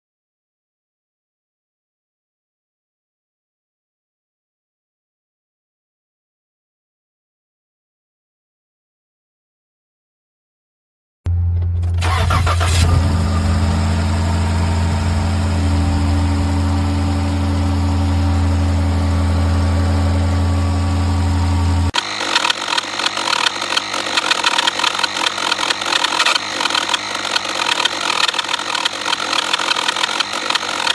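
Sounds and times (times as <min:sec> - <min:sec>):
car engine idling: 0:11.3 - 0:30.9
rough fluttering engine: 0:11.3 - 0:30.9.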